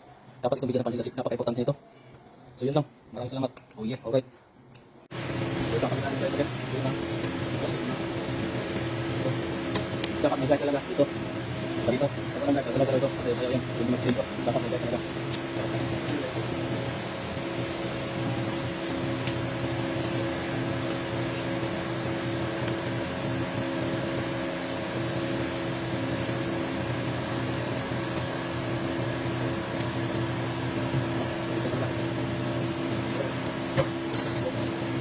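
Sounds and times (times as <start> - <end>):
steady machine hum: 4.5 - 35.0.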